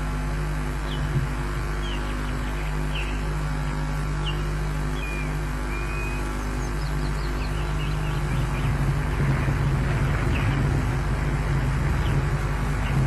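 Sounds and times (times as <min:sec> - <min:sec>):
steady low hum: 0:00.0 - 0:13.0
faint high bird chirps: 0:04.2 - 0:08.8
wind rushing on microphone: 0:07.4 - 0:13.0.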